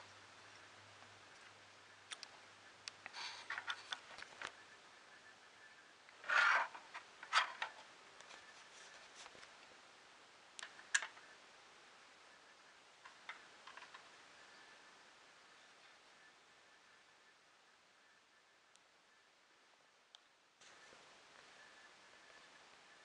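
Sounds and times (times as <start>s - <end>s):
scraping rustle: 6.2s - 9.7s.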